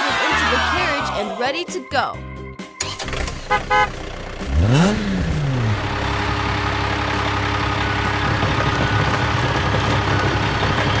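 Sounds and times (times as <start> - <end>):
heavy vehicle engine running: 2.9 - 11.0.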